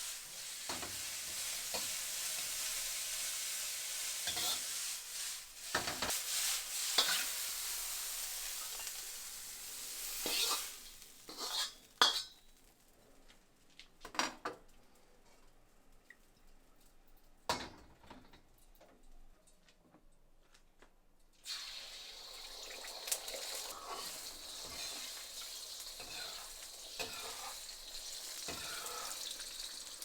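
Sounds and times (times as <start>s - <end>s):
food sizzling in a pan: 0.0s - 13.1s, 21.4s - 30.0s
spatula scraping a pan: 4.0s - 12.4s, 23.7s - 29.4s
utensil clinking on a pan: 10.1s - 12.6s, 26.0s - 27.6s.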